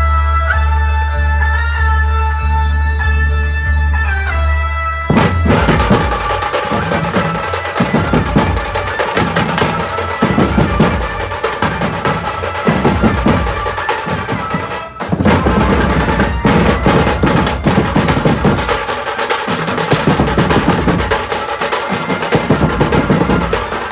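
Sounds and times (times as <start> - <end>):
fast drumming: 5.1 - 23.9.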